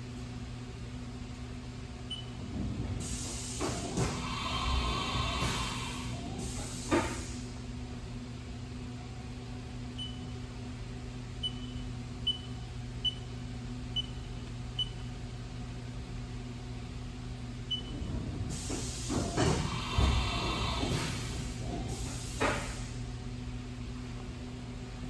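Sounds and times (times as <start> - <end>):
air hissing: 3.0 - 7.6, 18.5 - 23.0.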